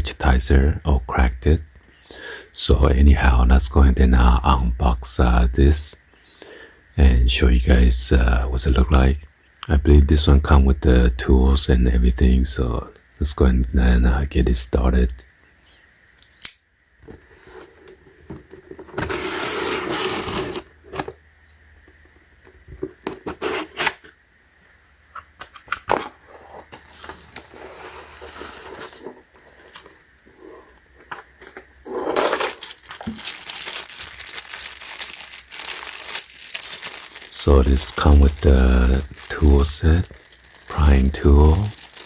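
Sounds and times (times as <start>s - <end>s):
plastic rustling and tearing: 18.8s - 21.2s, 25.4s - 42.0s.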